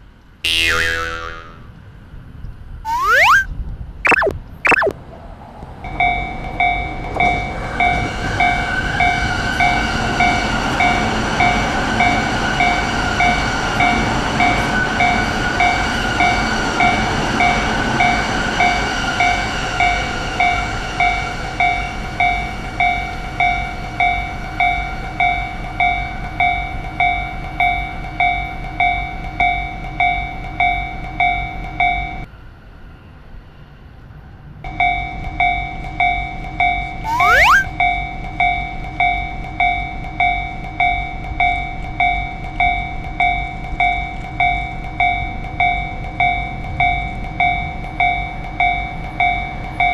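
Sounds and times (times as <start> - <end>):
railroad crossing bell: 5.9 - 32.3, 38.4 - 49.9.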